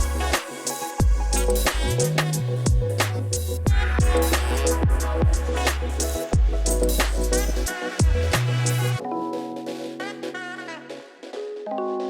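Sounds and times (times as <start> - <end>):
hip-hop beat with heavy bass: 0.0 - 11.0.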